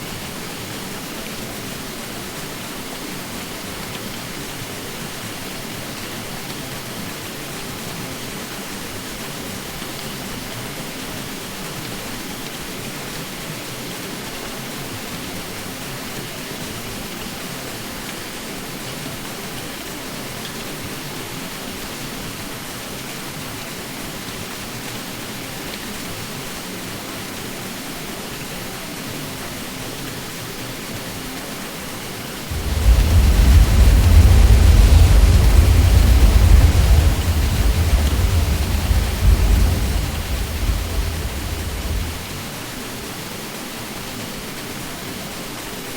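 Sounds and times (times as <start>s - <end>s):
ceiling fan whooshing hum: 32.4s - 42.8s
deep low hum: 32.5s - 42.5s.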